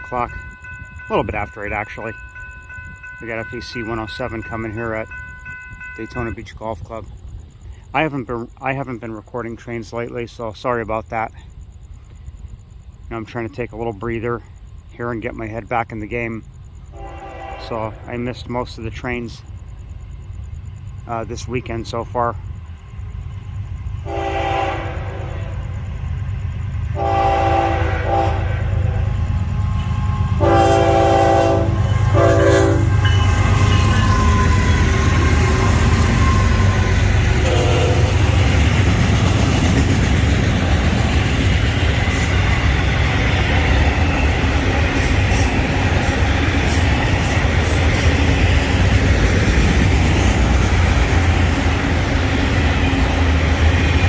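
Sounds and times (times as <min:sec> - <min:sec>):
train rumbling past: 0:00.0 - 0:54.0
train horn blasts: 0:16.9 - 0:18.1, 0:24.0 - 0:25.6, 0:26.9 - 0:29.1, 0:29.9 - 0:38.4.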